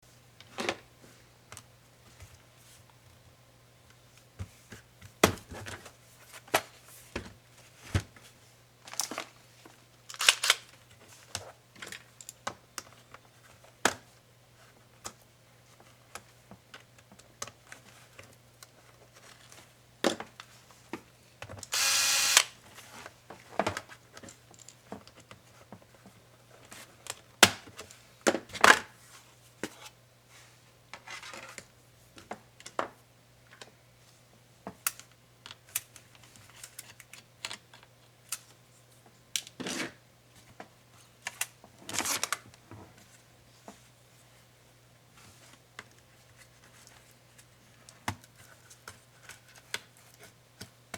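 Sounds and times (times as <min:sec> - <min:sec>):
small tools and plastic parts clicking: 0:21.6 - 0:22.5
powered screwdriver whirring: 0:21.7 - 0:22.6.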